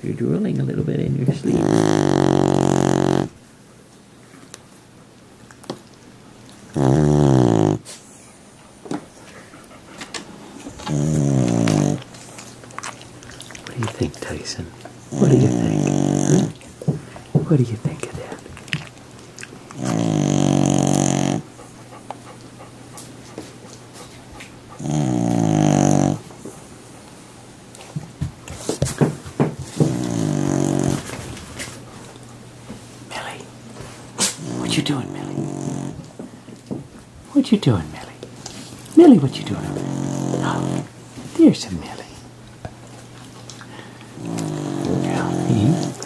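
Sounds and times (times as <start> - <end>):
animal snoring: 1.2 - 3.4, 6.7 - 7.9, 10.6 - 12.4, 15.0 - 16.6, 19.7 - 21.6, 24.7 - 26.3, 29.7 - 31.2, 34.2 - 36.2, 39.4 - 40.9, 43.8 - 46.0.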